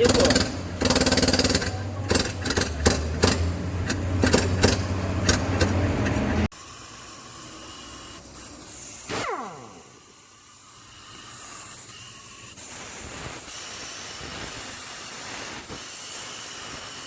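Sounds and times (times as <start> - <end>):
diesel engine running: 0.0 - 6.5.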